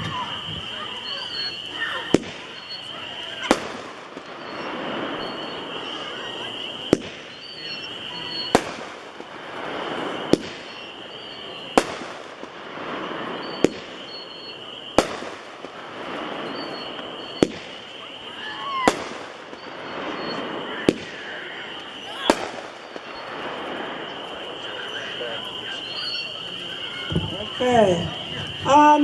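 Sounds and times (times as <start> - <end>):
crackling hiss: 0.0 - 29.0
firework bangs: 0.0 - 29.0.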